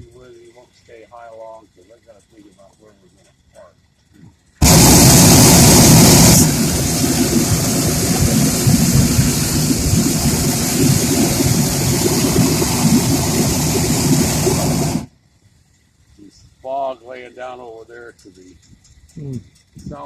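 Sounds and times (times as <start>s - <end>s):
propane burner roaring: 4.6s - 15.1s.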